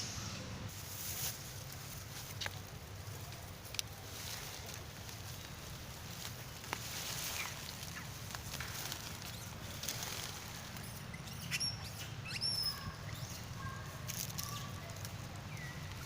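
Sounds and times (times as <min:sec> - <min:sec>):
steady low hum: 0:00.0 - 0:16.0
rustling and light clicks: 0:00.7 - 0:16.0
high-pitched animal squeaks: 0:11.0 - 0:13.4.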